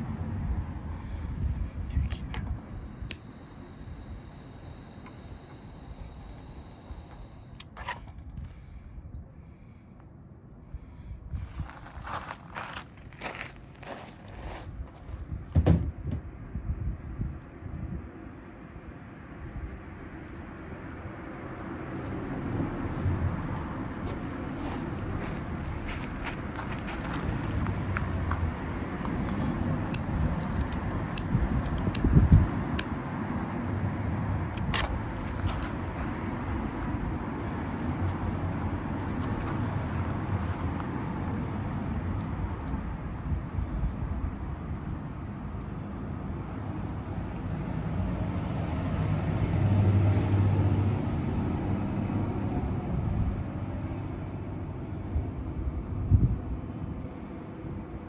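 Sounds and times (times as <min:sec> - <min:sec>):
steady low rumble: 0:00.0 - 0:07.6, 0:08.2 - 0:49.4, 0:50.3 - 0:58.0
wood fire crackling and popping: 0:17.0 - 0:33.5
vehicle passing by: 0:20.0 - 0:31.6, 0:32.2 - 0:43.0, 0:45.8 - 0:55.5.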